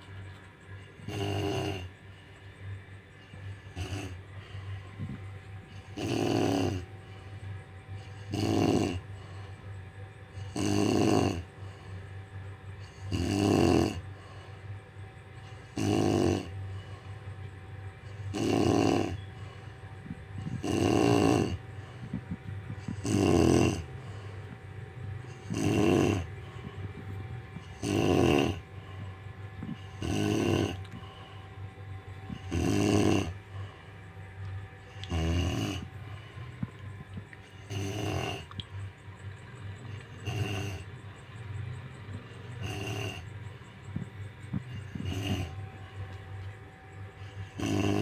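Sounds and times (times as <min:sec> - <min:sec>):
low steady hum: 0:00.0 - 0:48.0
quiet breathing: 0:00.0 - 0:48.0
woman snoring: 0:01.1 - 0:01.9, 0:05.7 - 0:06.8, 0:08.0 - 0:09.0, 0:10.4 - 0:11.5, 0:12.9 - 0:14.0, 0:15.7 - 0:16.5, 0:18.1 - 0:19.2, 0:20.4 - 0:22.2, 0:22.8 - 0:23.9, 0:25.3 - 0:26.3, 0:27.6 - 0:28.6, 0:29.6 - 0:31.0, 0:32.3 - 0:33.4, 0:34.9 - 0:35.9, 0:37.6 - 0:38.5, 0:44.7 - 0:45.6, 0:47.4 - 0:48.0.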